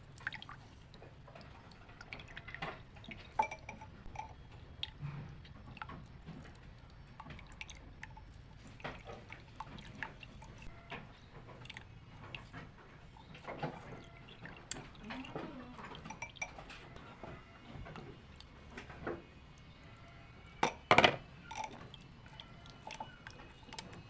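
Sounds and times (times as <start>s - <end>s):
liquid dripping and trickling: 0.0s - 24.0s
utensils and glassware clinking: 2.6s - 4.5s, 15.0s - 17.8s, 20.6s - 22.0s.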